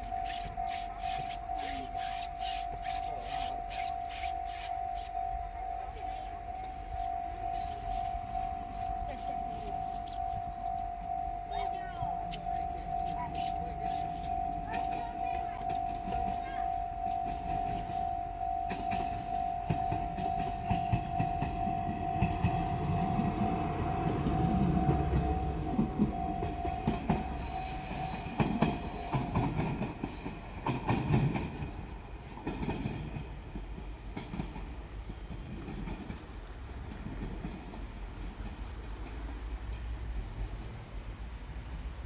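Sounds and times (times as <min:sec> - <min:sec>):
level crossing bell ringing: 0:00.0 - 0:29.5
train rumble: 0:00.0 - 0:42.0
train wheels clicking on rail joints: 0:00.0 - 0:42.0.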